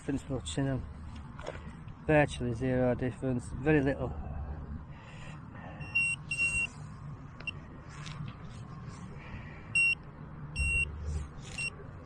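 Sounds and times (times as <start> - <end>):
metal detector beeps: 5.8 - 6.7, 9.7 - 10.0, 10.6 - 11.8.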